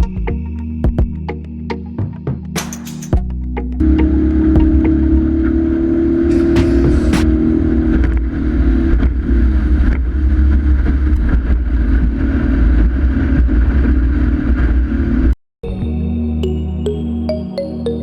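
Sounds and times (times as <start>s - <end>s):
motorboat engine running: 3.8s - 14.0s.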